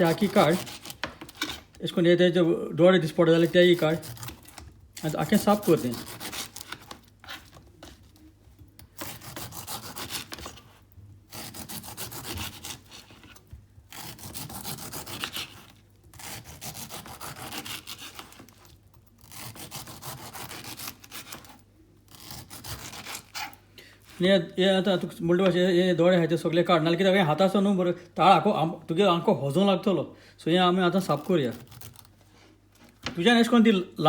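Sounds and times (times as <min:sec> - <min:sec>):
knife rasping pineapple skin: 0:00.0 - 0:01.8, 0:03.0 - 0:25.1, 0:30.8 - 0:32.1.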